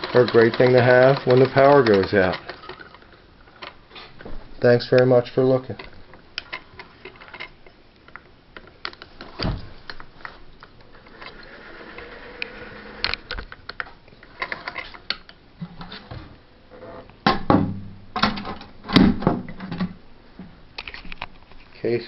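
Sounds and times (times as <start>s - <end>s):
sewing machine clicks and knocks: 0.0s - 2.8s.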